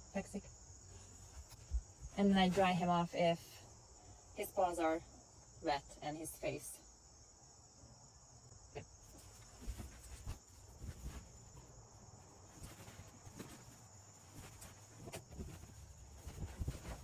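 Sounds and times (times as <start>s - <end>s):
crickets chirring: 0.0s - 17.0s
soft handling knocks: 8.8s - 17.0s.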